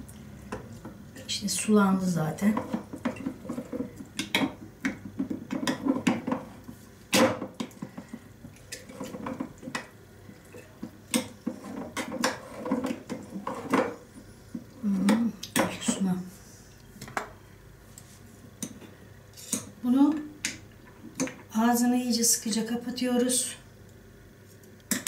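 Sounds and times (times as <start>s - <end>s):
spoon stirring and scraping: 2.3s - 6.9s, 7.5s - 14.7s, 17.9s - 19.8s.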